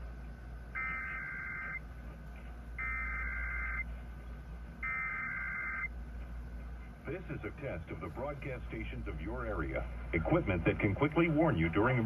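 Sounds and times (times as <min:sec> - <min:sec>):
warbling alert data tones: 0:00.8 - 0:01.8, 0:02.8 - 0:03.8, 0:04.8 - 0:05.9.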